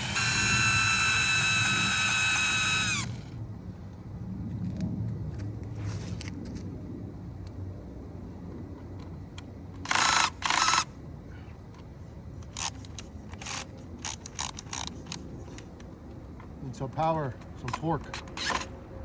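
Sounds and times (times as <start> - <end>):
screw gun backing out screws: 17.6 - 18.7.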